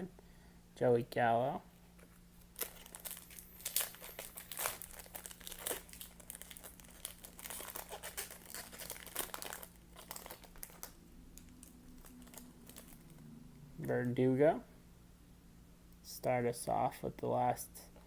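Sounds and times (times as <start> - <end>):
steady low hum: 0.0 - 18.0
foil wrapper crinkling and tearing: 2.5 - 13.2.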